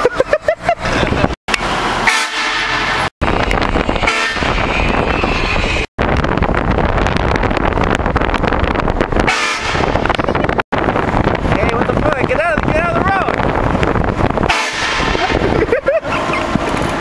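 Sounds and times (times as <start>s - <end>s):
air horn blasting: 2.0s - 3.0s, 4.0s - 5.5s, 9.3s - 10.0s, 14.4s - 15.3s.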